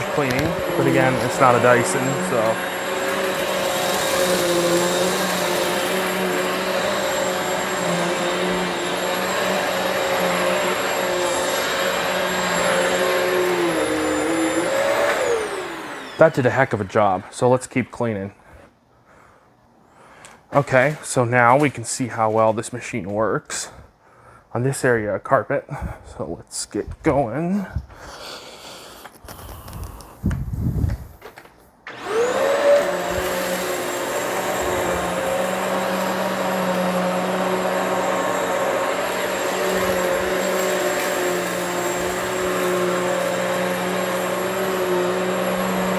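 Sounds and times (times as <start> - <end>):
vacuum cleaner running: 0.0 - 17.2, 31.9 - 45.9.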